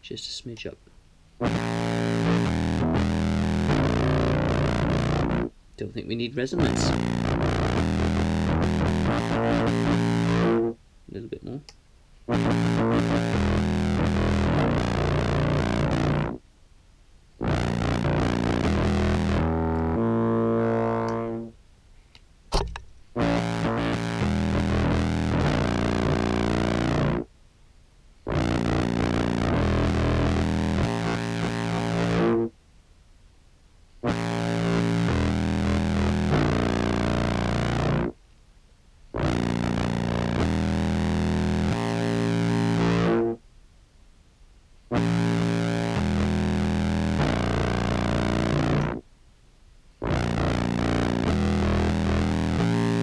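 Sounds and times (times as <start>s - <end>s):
fuzzy contrabass clarinet: 1.4s - 5.5s, 6.6s - 10.8s, 12.3s - 16.4s, 17.4s - 21.6s, 23.1s - 27.3s, 28.3s - 32.5s, 34.0s - 38.2s, 39.2s - 43.4s, 45.0s - 49.0s, 50.0s - 53.0s
short thump: 22.5s - 23.1s.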